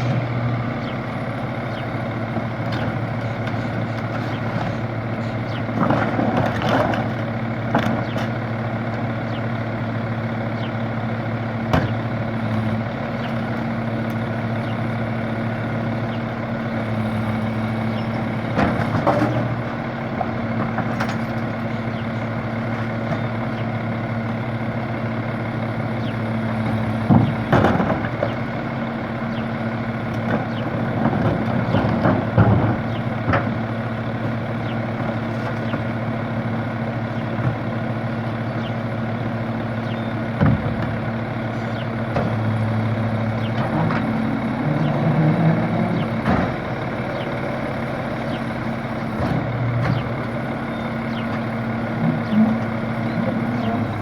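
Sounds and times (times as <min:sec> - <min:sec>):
garbage truck engine running: 0:00.0 - 0:54.0
clanks and thumps: 0:02.3 - 0:09.1, 0:11.7 - 0:12.2, 0:17.9 - 0:23.4, 0:26.6 - 0:28.6, 0:30.1 - 0:36.2, 0:39.9 - 0:46.8.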